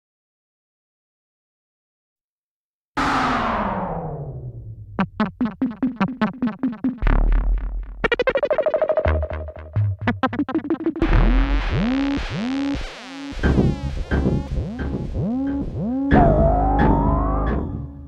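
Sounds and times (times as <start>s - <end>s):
electronic ticks over steady tone: 5.0s - 7.0s, 10.2s - 18.0s
arching electronic chirps: 5.0s - 7.2s, 8.1s - 18.0s
sharp electronic clicking pulses: 5.0s - 18.0s.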